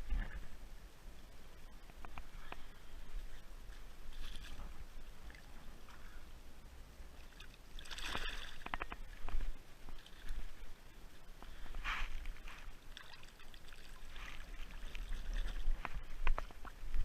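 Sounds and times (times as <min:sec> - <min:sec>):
river water sloshing: 0:07.1 - 0:17.0.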